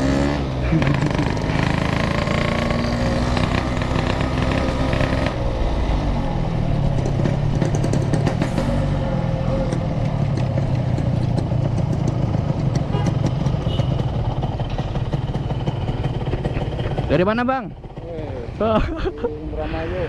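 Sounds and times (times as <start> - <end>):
motorcycle engine idling: 9.6 - 19.0.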